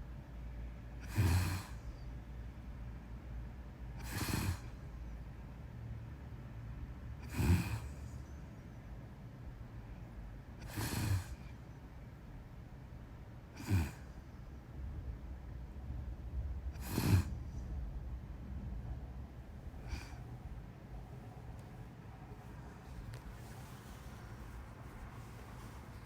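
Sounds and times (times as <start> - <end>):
person snoring: 1.0 - 1.8, 4.0 - 4.7, 7.2 - 8.0, 10.6 - 11.4, 13.6 - 14.1, 16.8 - 17.4, 19.8 - 20.2.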